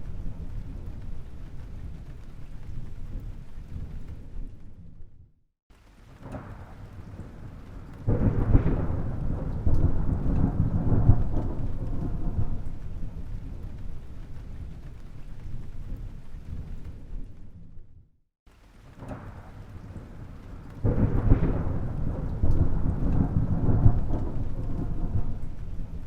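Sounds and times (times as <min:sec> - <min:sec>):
thunder rumbling and crashing: 0:06.2 - 0:17.8, 0:19.0 - 0:26.0.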